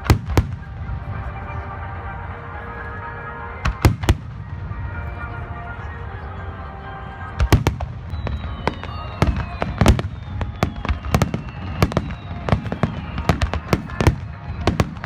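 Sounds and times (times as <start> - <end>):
fireworks bangs: 0.0 - 15.0
faint falling whistle: 7.4 - 15.0.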